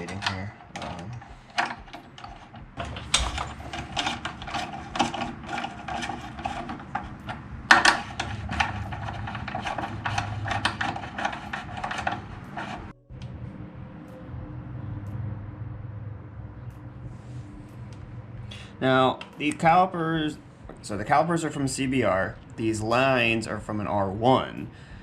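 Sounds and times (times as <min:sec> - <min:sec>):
tools clicking scraping and knocking: 0:00.0 - 0:13.0
low steady hum: 0:00.0 - 0:25.0.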